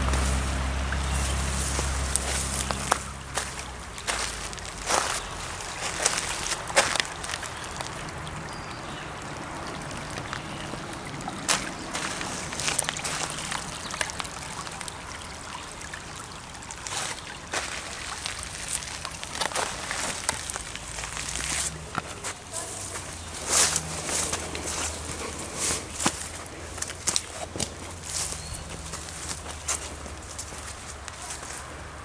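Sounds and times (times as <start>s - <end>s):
water trickling: 0.0s - 32.0s.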